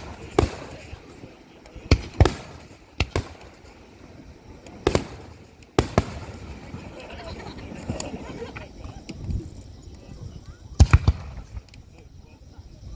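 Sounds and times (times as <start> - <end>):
firework shells bursting: 0.0 - 9.2, 10.8 - 11.8.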